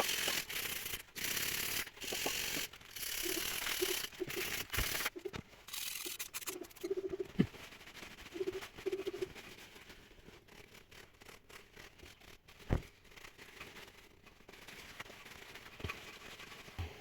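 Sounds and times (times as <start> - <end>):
brush scrubbing metal: 0.0 - 7.3.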